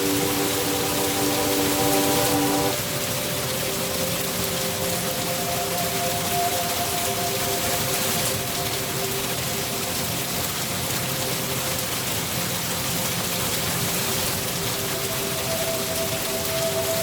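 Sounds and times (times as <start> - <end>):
soft drone of held notes: 0.0 - 11.1
steady rain: 0.0 - 17.0.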